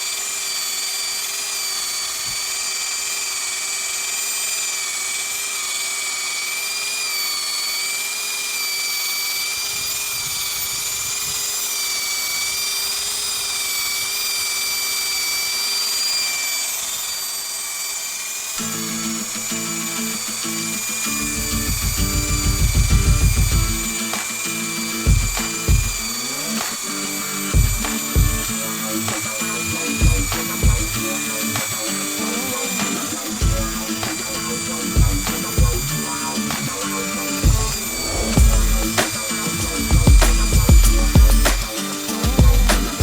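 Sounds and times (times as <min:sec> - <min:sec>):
machine motor whining: 0:00.0 - 0:43.0
music with pulsing beat: 0:21.3 - 0:24.4, 0:25.1 - 0:26.1, 0:27.5 - 0:31.9, 0:32.5 - 0:43.0.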